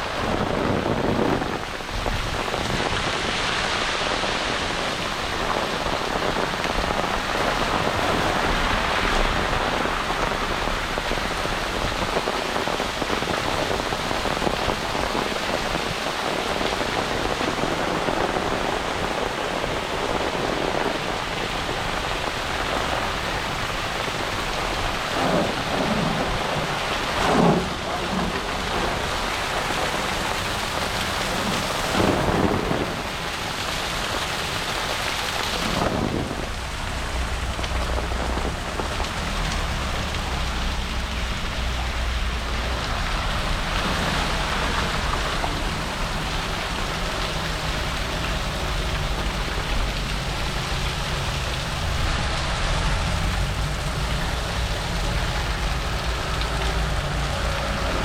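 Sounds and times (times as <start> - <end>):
heavy rain pouring: 0.0 - 58.0
low steady rumble: 24.5 - 33.3.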